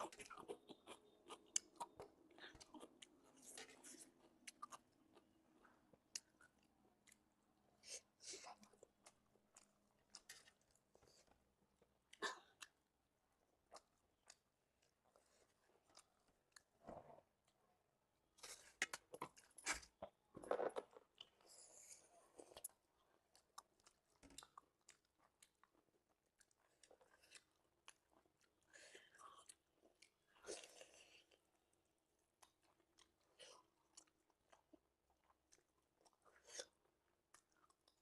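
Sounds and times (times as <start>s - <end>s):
wet chewing and crunching: 0.0s - 7.5s, 18.4s - 38.0s.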